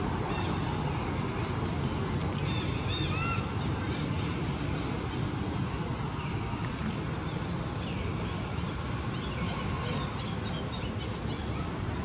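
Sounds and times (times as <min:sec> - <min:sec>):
rumbling outdoor noise: 0:00.0 - 0:12.0.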